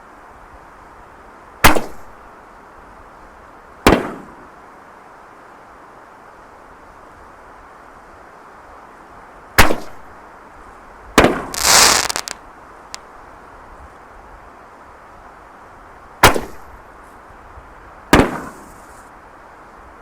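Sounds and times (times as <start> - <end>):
fireworks hissing crackle: 11.5 - 12.4.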